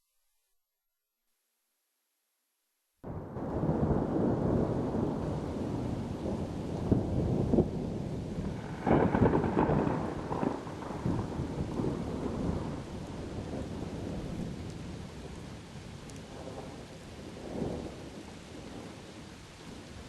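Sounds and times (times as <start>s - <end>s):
rumbling thunder: 3.0s - 15.4s, 16.2s - 19.0s
steady rain: 3.0s - 20.0s.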